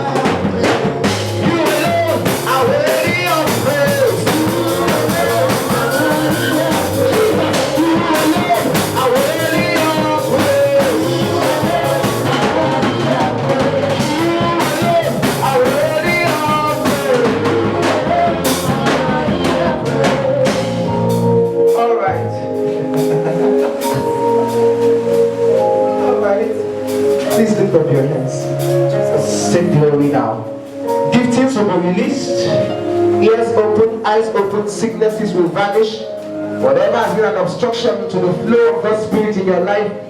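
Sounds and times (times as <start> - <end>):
people singing: 0.0 - 21.5
up-tempo worship band music: 0.0 - 40.0.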